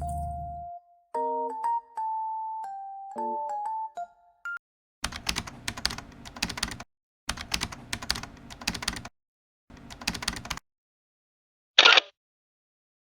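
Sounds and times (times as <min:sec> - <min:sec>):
rapid keyboard typing: 0:05.0 - 0:09.1, 0:09.7 - 0:10.6.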